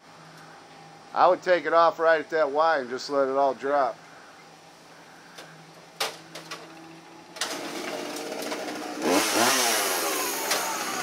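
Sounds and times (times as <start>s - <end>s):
chainsaw running: 6.7s - 11.0s.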